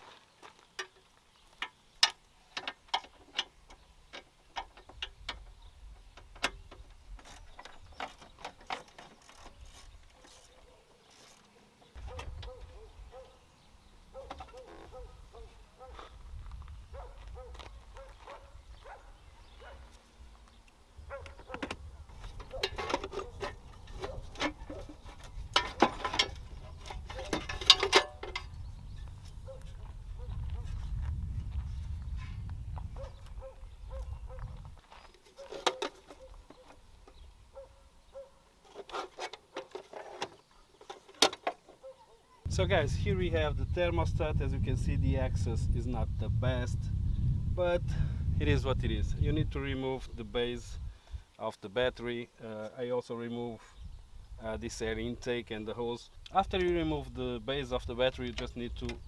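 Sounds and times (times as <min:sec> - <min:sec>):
hand tools clicking and knocking: 0:01.6 - 0:05.5, 0:06.2 - 0:12.6, 0:21.2 - 0:28.5, 0:35.2 - 0:37.2
low rumble: 0:42.5 - 0:49.6.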